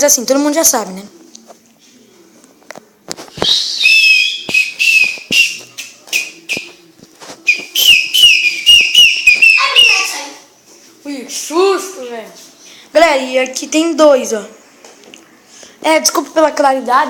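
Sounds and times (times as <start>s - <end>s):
toy whistle blowing: 3.4s - 6.6s, 7.5s - 10.0s.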